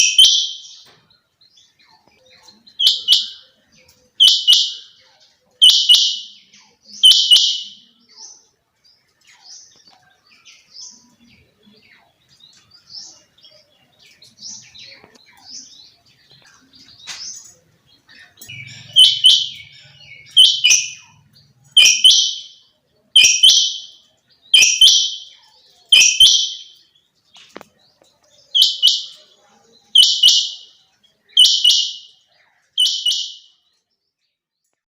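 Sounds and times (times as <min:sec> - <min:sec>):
quail calling: 0:18.2 - 0:22.5.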